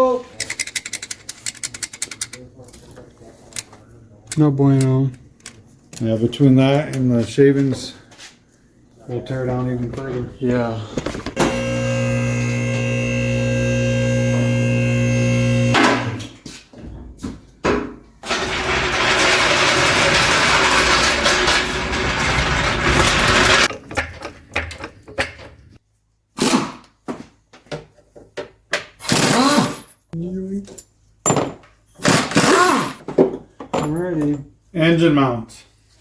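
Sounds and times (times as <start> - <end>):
tools clicking and clanking: 0.3 - 7.2
power tool motor humming: 11.3 - 16.3, 18.3 - 23.7.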